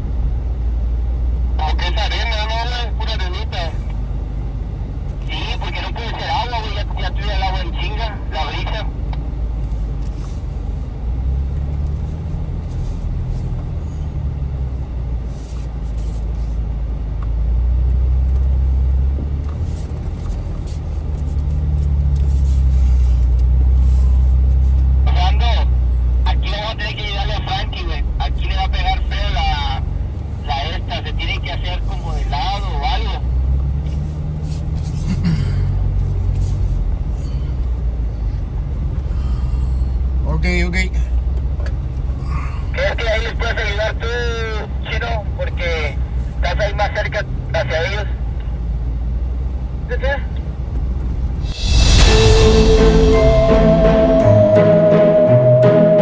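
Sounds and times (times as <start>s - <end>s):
engine rumbling at low revs: 0.0s - 51.5s.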